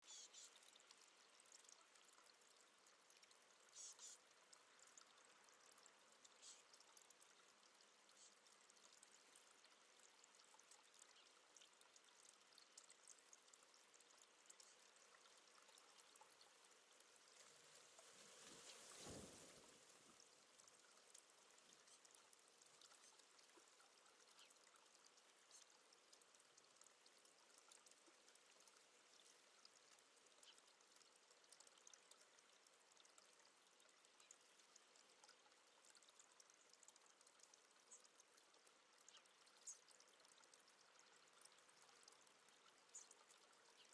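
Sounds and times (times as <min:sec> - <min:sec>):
faint steady hiss: 0:00.0 - 0:43.9
water trickling with small splashes: 0:00.0 - 0:43.9.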